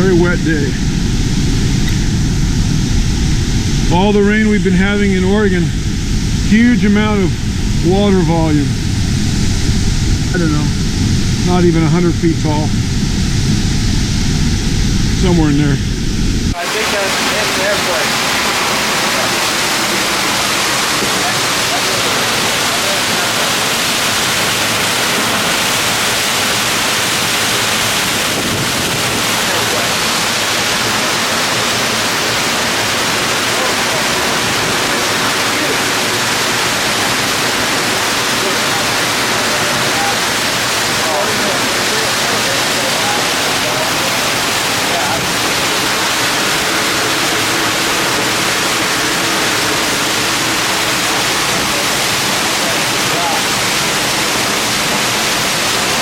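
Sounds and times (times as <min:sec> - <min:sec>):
waterfall rushing: 0:00.0 - 0:01.0, 0:16.5 - 0:56.0.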